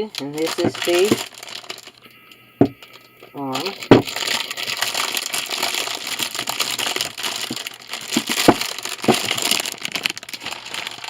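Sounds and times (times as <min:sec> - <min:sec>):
packaging crinkling and rustling: 0:00.0 - 0:11.0.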